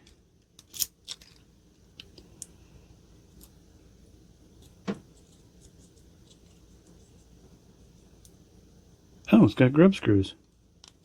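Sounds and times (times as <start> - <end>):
clicks of small metal lock parts: 0.6 - 1.4.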